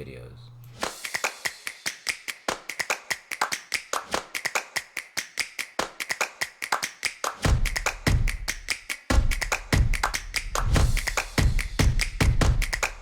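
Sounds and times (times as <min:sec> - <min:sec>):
percussion clicks and taps: 0:00.7 - 0:13.0.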